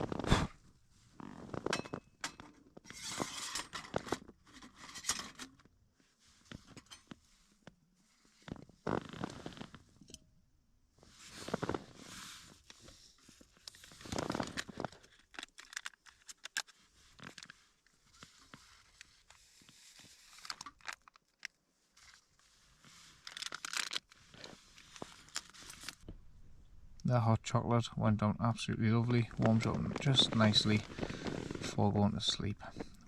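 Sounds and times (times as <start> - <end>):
packaging rustling and crinkling: 13.2 - 26.0, 29.3 - 31.8.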